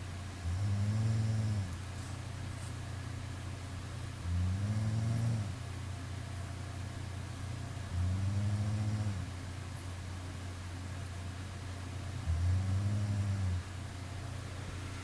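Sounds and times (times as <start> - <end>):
steady low hum: 0.0 - 15.0
person snoring: 0.4 - 1.7, 4.3 - 5.6, 7.9 - 9.3, 12.2 - 13.6.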